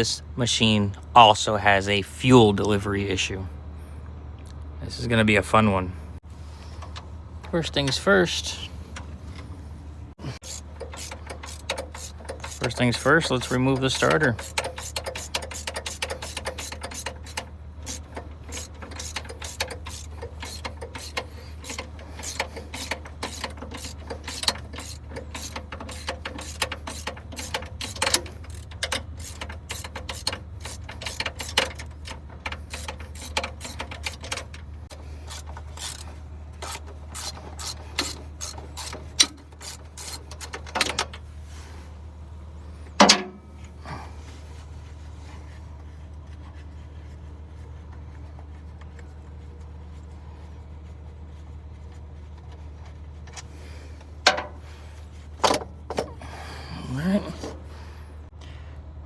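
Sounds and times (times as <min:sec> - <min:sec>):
ratchet wrench clicking: 0:10.4 - 0:34.6, 0:35.2 - 0:41.0.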